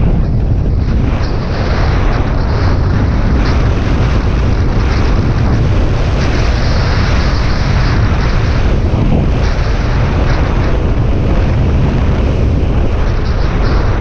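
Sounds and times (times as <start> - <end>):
motorcycle engine rumble: 0.0 - 14.0
wind buffeting microphone: 0.0 - 14.0.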